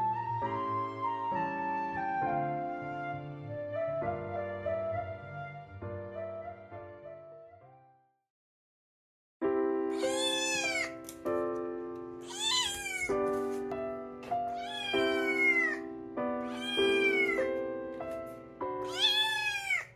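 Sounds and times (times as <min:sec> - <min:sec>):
cat meowing: 0:09.9 - 0:11.1, 0:12.2 - 0:13.4, 0:14.5 - 0:17.6, 0:18.8 - 0:19.9.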